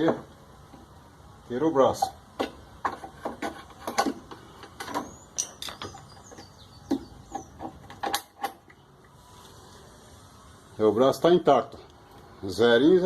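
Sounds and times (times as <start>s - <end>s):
parts squeaking: 1.8s - 9.5s.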